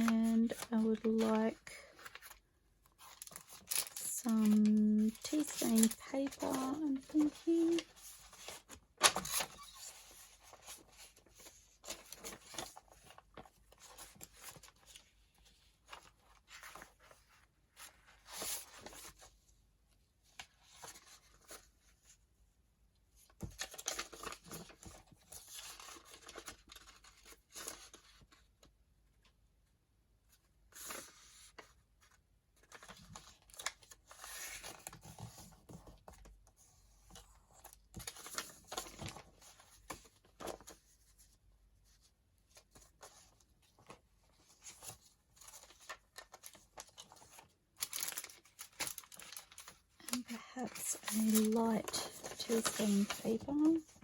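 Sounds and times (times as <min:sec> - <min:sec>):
paper rustling and sliding: 0:41.9 - 0:54.0.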